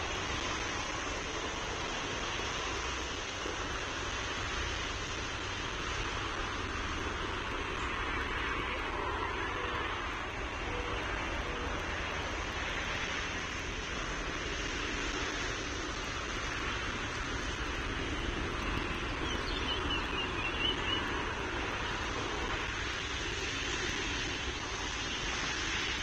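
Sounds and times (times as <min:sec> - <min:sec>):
steady rushing outdoor noise: 0:00.0 - 0:26.0
faint high bird chirps: 0:19.2 - 0:21.1.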